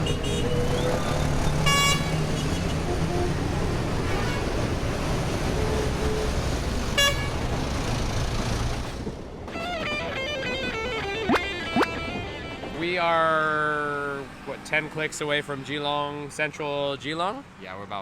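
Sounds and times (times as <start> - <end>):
vehicle horn toots: 0.0 - 0.6, 1.6 - 3.4, 4.0 - 4.6, 7.0 - 7.4
road traffic noise: 0.0 - 18.0.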